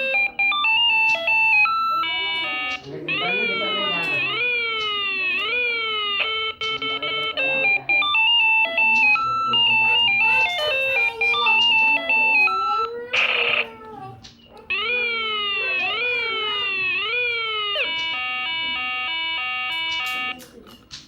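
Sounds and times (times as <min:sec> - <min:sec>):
electronic siren sound: 0:00.0 - 0:13.8, 0:14.6 - 0:20.4
electronic toy tune: 0:00.0 - 0:13.8, 0:14.5 - 0:20.6.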